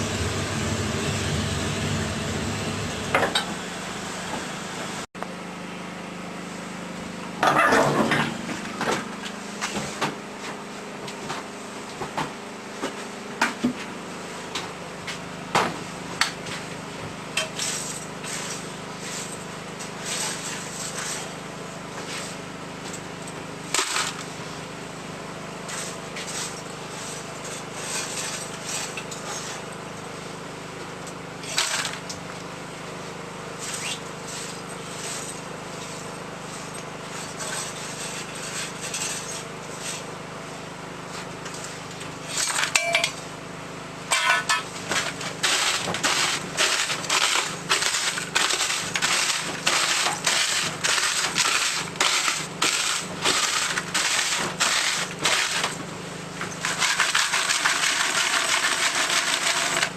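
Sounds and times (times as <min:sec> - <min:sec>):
steady low hum: 0:00.0 - 0:05.1.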